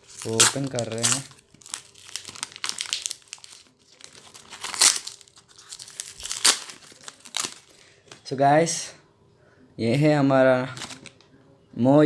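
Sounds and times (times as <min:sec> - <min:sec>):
loud wrapping rips: 0:00.0 - 0:07.7
paper and plastic crinkling: 0:00.0 - 0:08.3, 0:10.6 - 0:11.2.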